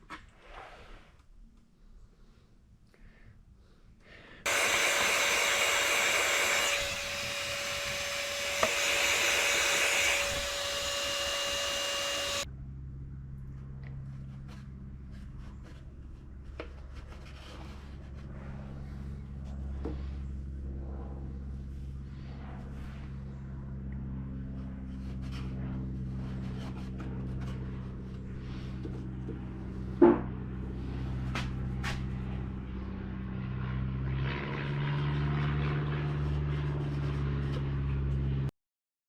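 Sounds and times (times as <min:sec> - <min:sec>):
low hum: 0:04.5 - 0:12.4
electric blower running: 0:04.5 - 0:12.5.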